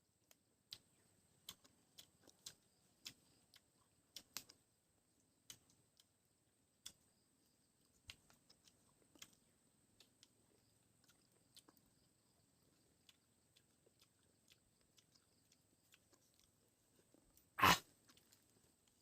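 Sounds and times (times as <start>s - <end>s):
mouth chewing and sucking: 0.7s - 4.6s, 7.8s - 19.0s.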